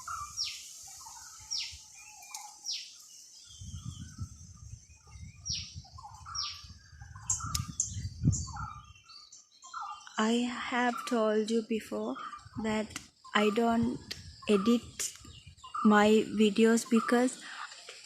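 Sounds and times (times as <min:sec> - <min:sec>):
soft bird chirps: 0:00.0 - 0:18.0
wind rumble on microphone: 0:03.3 - 0:09.3, 0:12.2 - 0:17.2.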